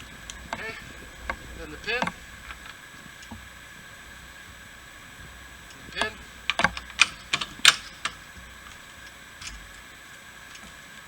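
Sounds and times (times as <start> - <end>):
sharp metal clicks and taps: 5.7 - 9.6.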